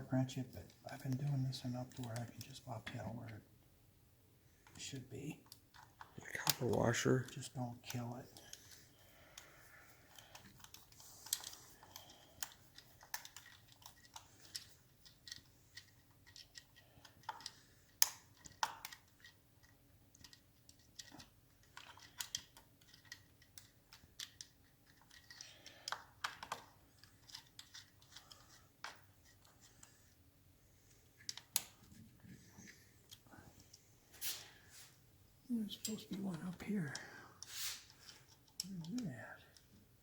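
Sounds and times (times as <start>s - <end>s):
hand tools clicking and tapping: 9.3s - 29.5s.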